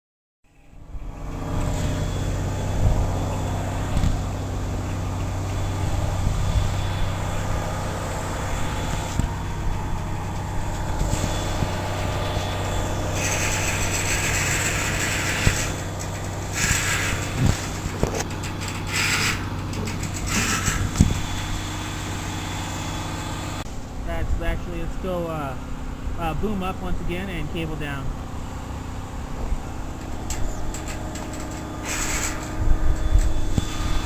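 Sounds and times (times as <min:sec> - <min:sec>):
heavy truck engine running: 0:00.5 - 0:34.0
loud hiss: 0:05.7 - 0:18.0.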